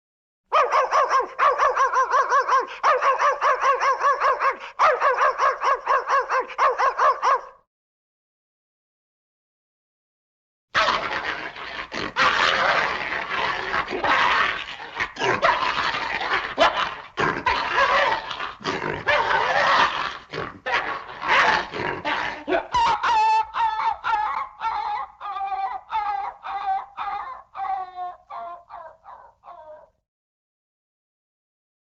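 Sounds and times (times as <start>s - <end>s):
dog yipping and whining: 22.8s - 29.9s.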